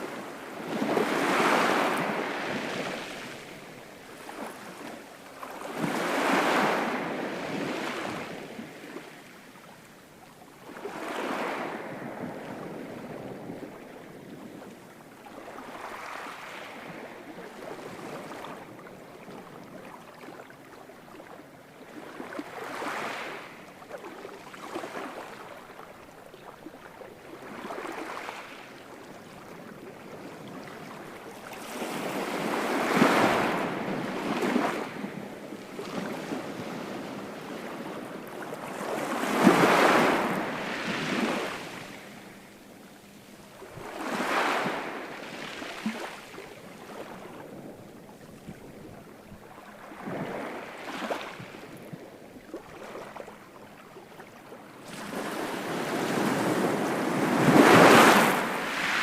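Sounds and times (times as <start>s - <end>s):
ocean waves breaking: 0.0s - 9.0s, 30.5s - 53.7s, 54.8s - 59.0s.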